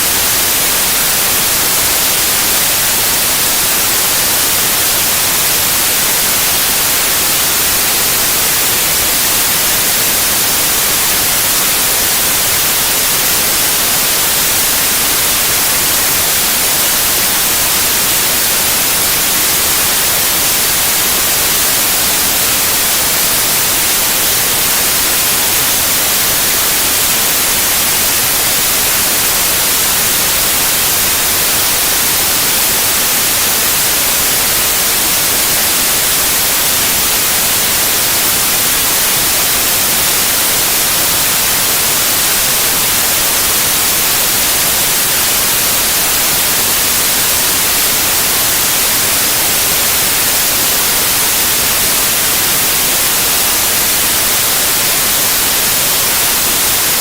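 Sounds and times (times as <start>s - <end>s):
white noise hiss: 0.0s - 57.0s.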